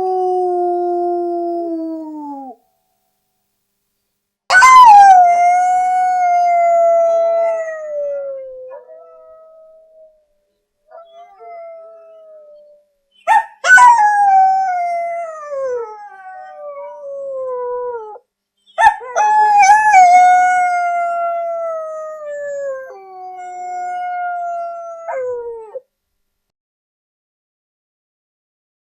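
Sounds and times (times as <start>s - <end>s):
dog howling: 4.5s - 9.6s, 18.8s - 25.8s.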